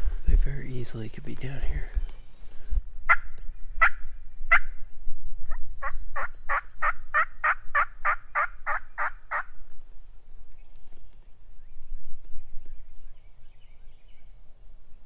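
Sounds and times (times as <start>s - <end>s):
turkey call yelps: 6.2s - 9.5s.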